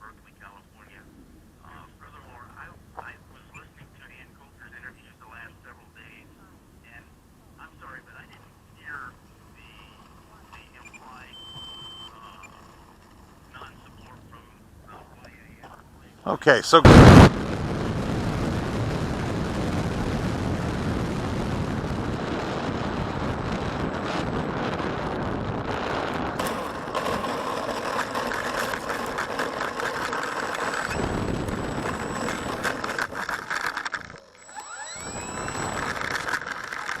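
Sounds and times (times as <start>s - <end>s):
model airplane electric motor whine: 9.3s - 13.8s, 25.8s - 37.0s
wind noise on microphone: 16.8s - 26.6s, 30.7s - 33.5s, 34.7s - 36.4s.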